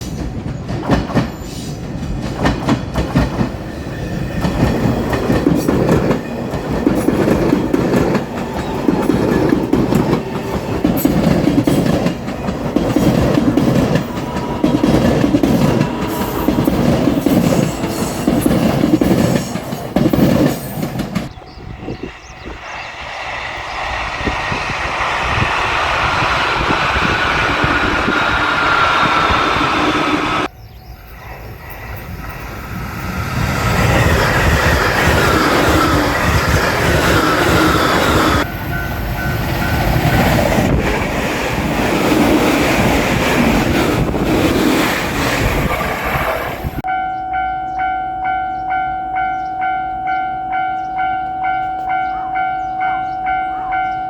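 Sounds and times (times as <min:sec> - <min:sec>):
train wheels clacking on rail joints: 0:00.0 - 0:21.4, 0:32.9 - 0:46.9
train running hum: 0:00.0 - 0:54.0.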